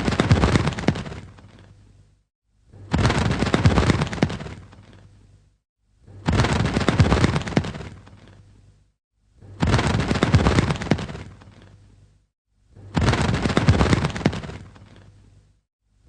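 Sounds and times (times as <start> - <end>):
bird wings flapping: 0.0 - 1.8, 2.8 - 5.2, 6.2 - 8.5, 9.5 - 11.9, 12.8 - 15.2.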